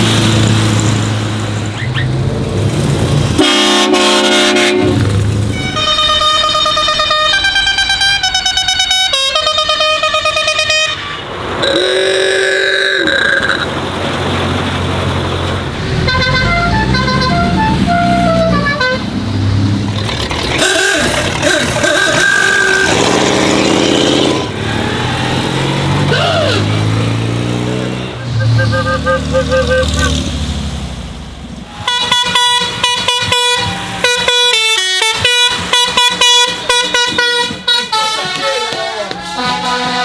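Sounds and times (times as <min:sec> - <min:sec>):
engines running: 0:00.0 - 0:40.0
car horns: 0:03.3 - 0:13.8, 0:15.8 - 0:19.2, 0:20.6 - 0:30.4, 0:31.6 - 0:40.0
musical horn tune: 0:03.4 - 0:11.3, 0:15.9 - 0:19.1, 0:27.8 - 0:30.2, 0:31.7 - 0:40.0
two-pitch pulsing horn: 0:03.4 - 0:12.0, 0:16.0 - 0:19.1, 0:27.9 - 0:30.2, 0:31.7 - 0:40.0.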